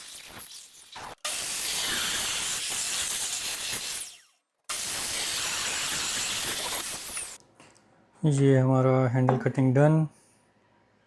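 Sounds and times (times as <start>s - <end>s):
power tool cutting wood: 0.0s - 7.4s.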